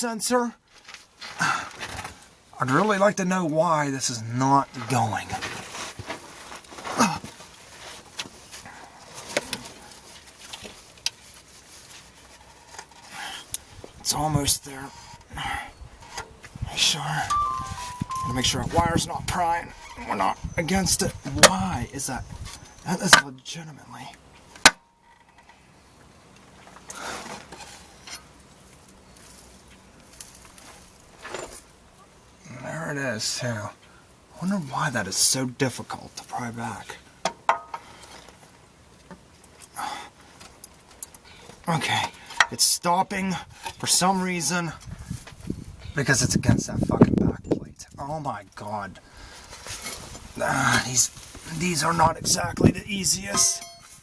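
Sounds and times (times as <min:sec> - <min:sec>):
faint scraping and shuffling: 0:04.2 - 0:22.8, 0:26.5 - 0:31.9, 0:43.1 - 0:47.1, 0:47.8 - 0:54.0
hand tools tapping on metal: 0:17.3 - 0:18.5, 0:37.2 - 0:37.9, 0:53.3 - 0:54.0
sharp metallic clank: 0:17.3 - 0:18.5, 0:53.4 - 0:54.0
short falling pitch sound: 0:17.3 - 0:18.6.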